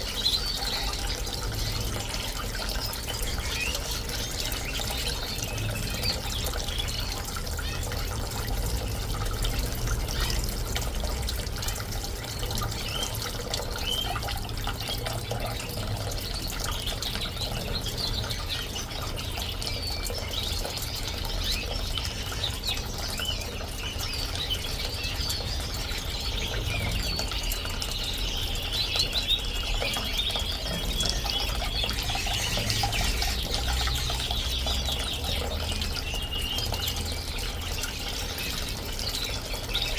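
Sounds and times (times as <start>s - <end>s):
bird singing a fast trill: 0.0s - 8.4s, 12.6s - 39.9s
fountain splashing: 0.0s - 39.9s
birds chirping: 12.0s - 39.9s.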